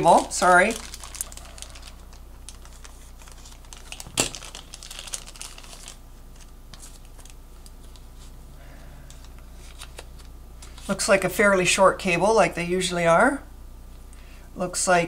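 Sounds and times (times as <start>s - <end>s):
plastic packaging crinkling: 0.0s - 8.4s, 9.1s - 11.0s
steady low hum: 0.0s - 15.0s.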